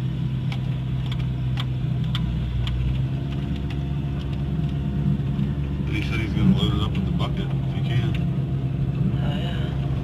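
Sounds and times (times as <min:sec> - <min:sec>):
vehicle engine running: 0:00.0 - 0:10.0
sharp clicks and knocks: 0:00.4 - 0:05.5.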